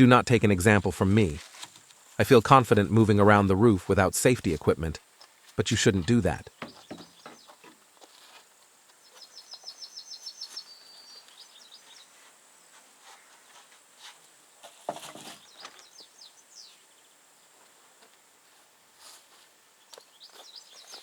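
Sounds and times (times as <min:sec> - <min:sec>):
small songbird singing: 0:05.7 - 0:07.7, 0:09.0 - 0:12.2, 0:15.4 - 0:17.2, 0:19.8 - 0:21.0.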